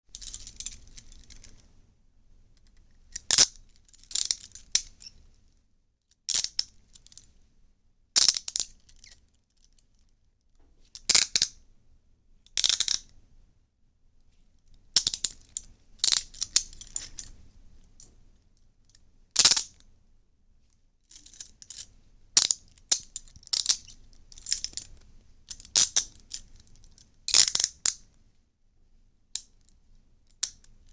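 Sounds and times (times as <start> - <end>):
metal handcuffs clicking and ratcheting: 0.1 - 1.6, 3.1 - 5.1, 6.3 - 7.3, 8.2 - 9.8, 11.0 - 11.6, 12.6 - 13.1, 15.0 - 17.3, 19.4 - 19.8, 21.1 - 28.0, 30.3 - 30.9.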